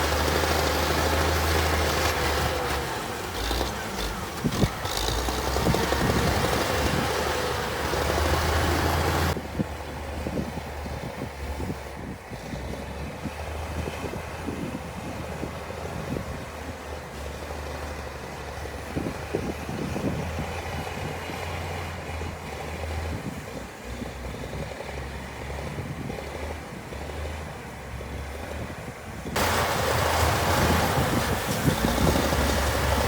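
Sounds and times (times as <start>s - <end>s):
diesel engine of heavy machinery: 0.0s - 33.0s
loud noisy rush: 29.4s - 33.0s.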